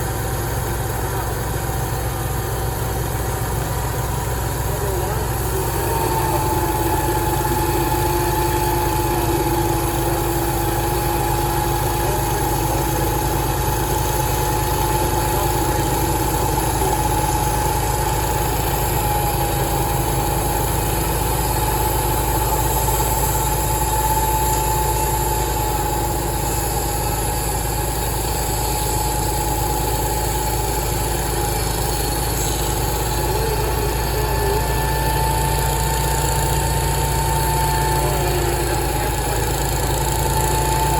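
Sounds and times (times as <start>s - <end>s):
machinery drone: 0.0s - 40.9s
steady machine whine: 0.0s - 40.9s.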